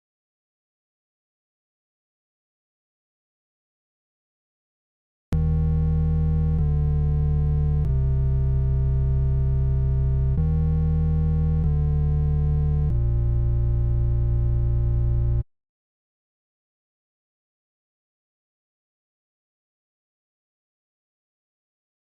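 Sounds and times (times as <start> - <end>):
buzzy low synthesizer notes: 5.4 - 15.4.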